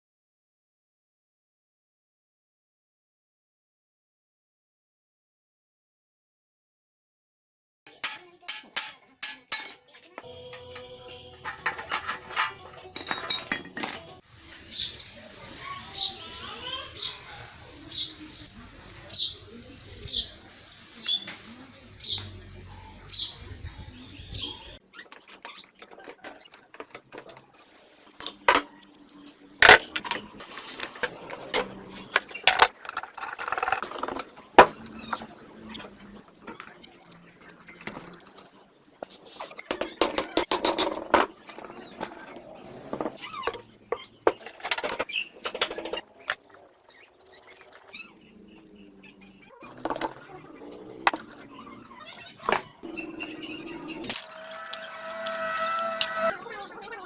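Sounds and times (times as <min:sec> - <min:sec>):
metal parts and tools clinking: 0:07.9 - 0:14.2, 0:24.8 - 0:57.0.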